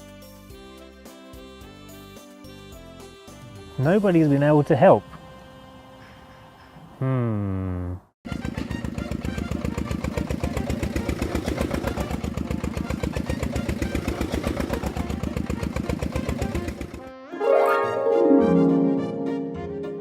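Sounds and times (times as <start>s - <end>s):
engine chugging: 8.3s - 17.1s
short rising tone: 17.3s - 20.0s.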